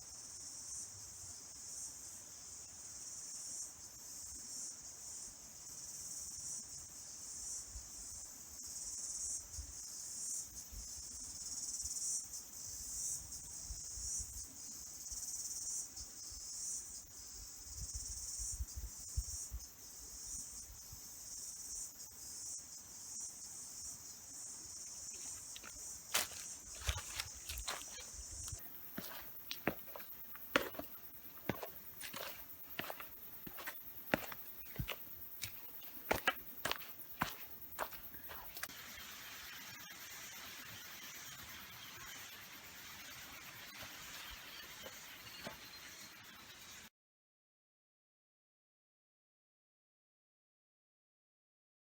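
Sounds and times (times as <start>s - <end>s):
insects chirring: 0.1s - 46.9s.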